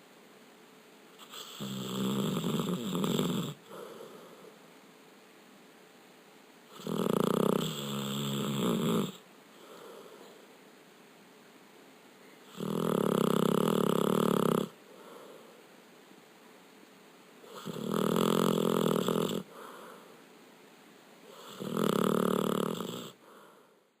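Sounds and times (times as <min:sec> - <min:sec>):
dog snoring: 0:01.2 - 0:04.5, 0:06.7 - 0:10.4, 0:12.4 - 0:15.5, 0:17.4 - 0:20.1, 0:21.3 - 0:23.7
dog breathing quietly: 0:02.5 - 0:04.6, 0:08.8 - 0:10.5, 0:14.2 - 0:15.7, 0:18.9 - 0:20.2.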